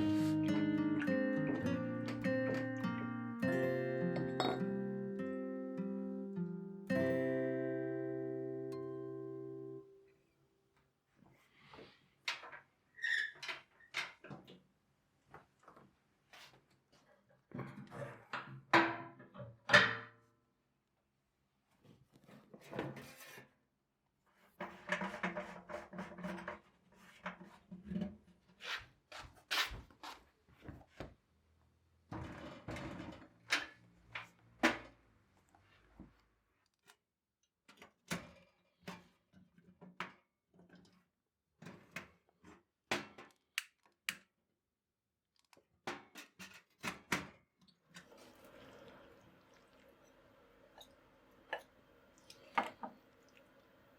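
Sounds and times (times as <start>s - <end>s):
kitchen things clattering: 4.1s - 4.8s, 50.7s - 53.3s.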